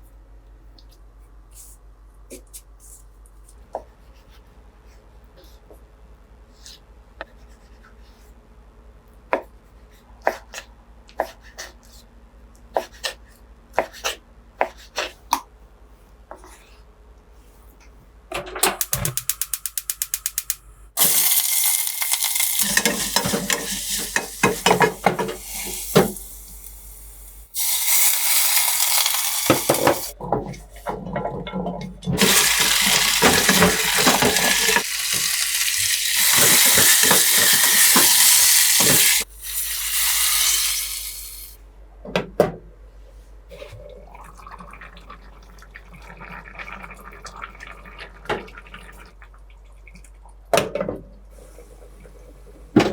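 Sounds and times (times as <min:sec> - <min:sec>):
water running from a tap: 0:21.0 - 0:26.6, 0:27.6 - 0:30.2, 0:32.2 - 0:41.5
kitchen clatter and knocks: 0:22.6 - 0:26.2, 0:29.5 - 0:35.3, 0:36.2 - 0:39.2, 0:52.6 - 0:52.9.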